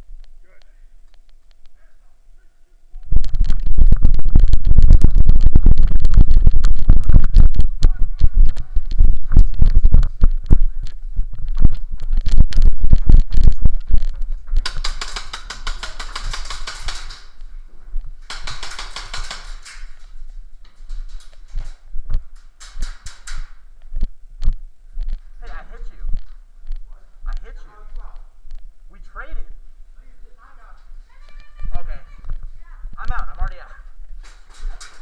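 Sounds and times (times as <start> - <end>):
airsoft guns firing bursts: 14.6 - 17.4, 18.2 - 19.9.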